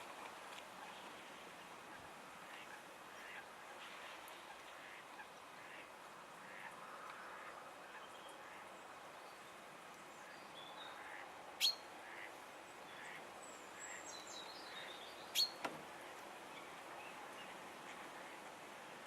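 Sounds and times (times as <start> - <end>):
background hiss: 0.0 - 19.0
small bird chirps: 15.4 - 15.6.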